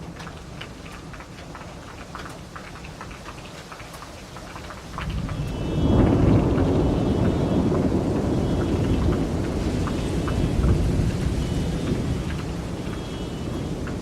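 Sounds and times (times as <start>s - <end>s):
steady rain: 0.0s - 14.0s
rolling thunder: 5.0s - 14.0s.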